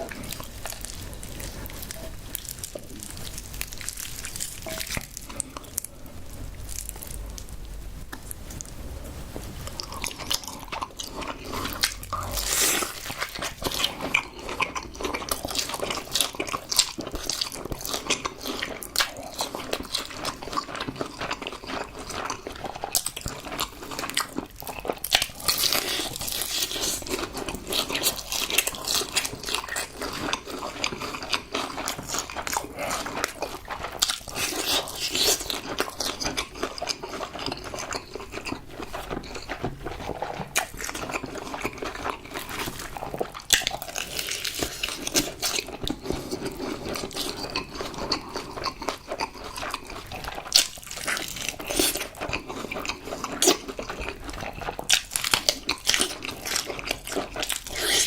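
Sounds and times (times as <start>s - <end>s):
crunching fried chicken: 0.0s - 8.7s, 9.6s - 58.0s
wet chewing: 9.6s - 58.0s.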